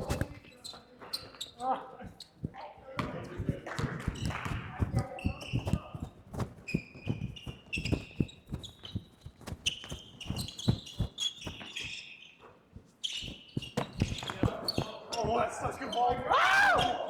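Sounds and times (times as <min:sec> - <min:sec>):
sneakers squeaking on court: 0:00.0 - 0:17.0
basketball bouncing on hardwood floor: 0:02.0 - 0:12.0, 0:13.2 - 0:16.2.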